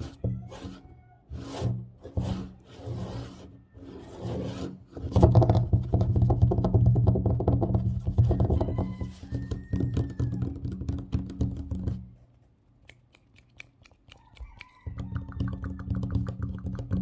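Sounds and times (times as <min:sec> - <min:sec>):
scratching on tabletop: 0:00.0 - 0:12.1
fast tapping on table: 0:05.2 - 0:12.0.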